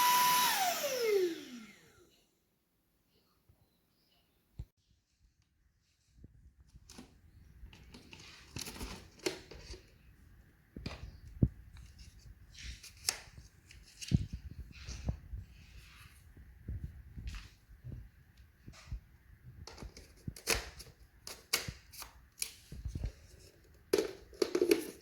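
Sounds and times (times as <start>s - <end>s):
rustling and scraping: 5.1s - 10.2s, 10.8s - 21.1s.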